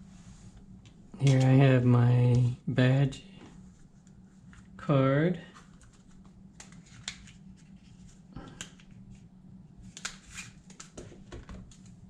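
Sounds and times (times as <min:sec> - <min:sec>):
steady low hum: 0:00.0 - 0:12.0
plastic cards clicking and rustling: 0:05.5 - 0:12.0.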